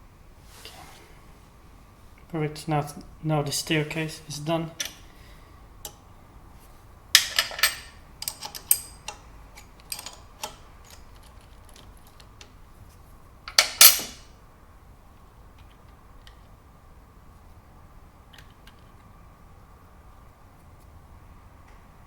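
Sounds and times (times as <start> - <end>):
metal parts clinking: 4.8 - 5.1, 7.2 - 12.2, 13.5 - 14.3.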